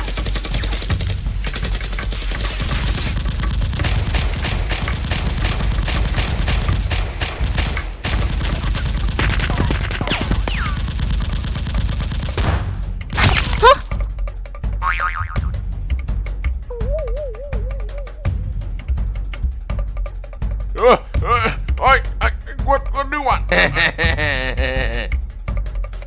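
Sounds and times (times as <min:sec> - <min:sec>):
rapid gunfire: 0:00.0 - 0:13.6.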